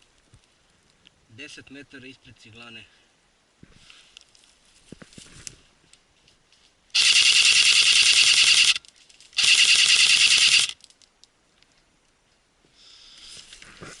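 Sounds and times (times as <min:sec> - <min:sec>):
airsoft gun full-auto bursts: 0:07.0 - 0:08.8, 0:09.4 - 0:10.8.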